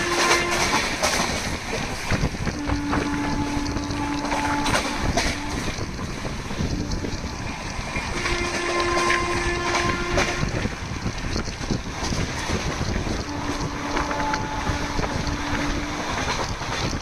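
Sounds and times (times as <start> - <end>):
locomotive horn: 0.0 - 1.4, 2.4 - 6.0, 6.6 - 7.4, 8.0 - 10.7, 13.1 - 16.4
rush and clatter of passing train: 0.0 - 17.0.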